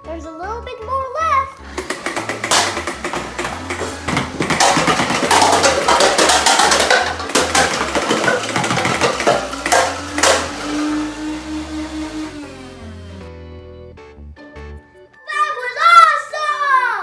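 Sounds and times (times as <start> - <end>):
plastic cups clattering: 1.6 - 13.3.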